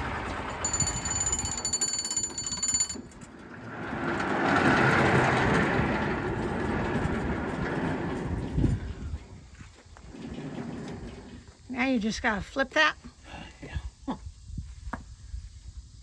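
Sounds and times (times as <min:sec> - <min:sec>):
sawmill machinery rushing noise: 0:00.0 - 0:09.4, 0:10.0 - 0:12.1.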